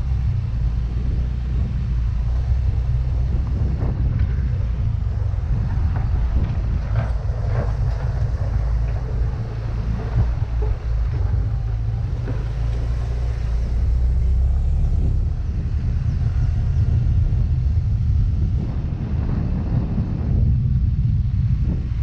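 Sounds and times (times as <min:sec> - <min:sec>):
scooter engine drone: 0:00.0 - 0:22.0
wind and road noise: 0:00.0 - 0:22.0.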